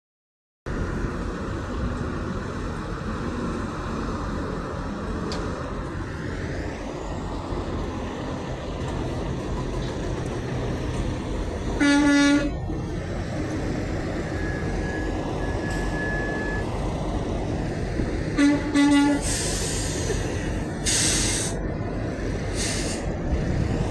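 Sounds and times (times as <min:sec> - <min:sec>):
truck engines and road traffic: 0:00.7 - 0:23.9
truck air horn blast: 0:11.8 - 0:12.6, 0:18.3 - 0:20.0.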